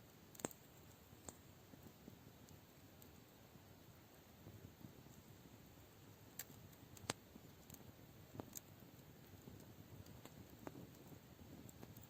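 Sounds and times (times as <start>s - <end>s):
campfire crackling: 0.0s - 12.0s
fire pops: 0.1s - 3.3s, 6.1s - 12.0s.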